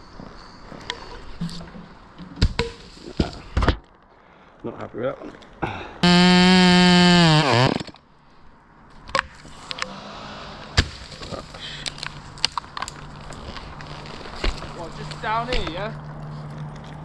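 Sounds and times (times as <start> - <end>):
chainsaw running: 6.0 - 7.8.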